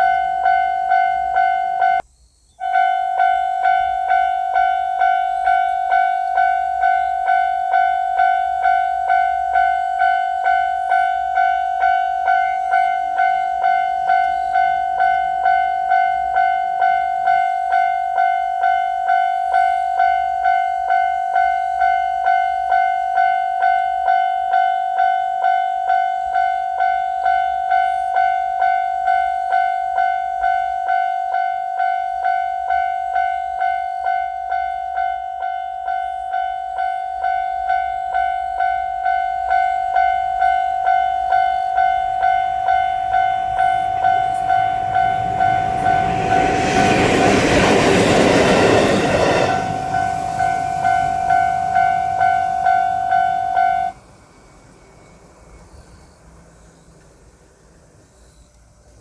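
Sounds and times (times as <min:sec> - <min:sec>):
passing train rumble: 0:00.0 - 0:02.0, 0:02.6 - 0:59.0
level crossing bell ringing: 0:02.8 - 0:54.0.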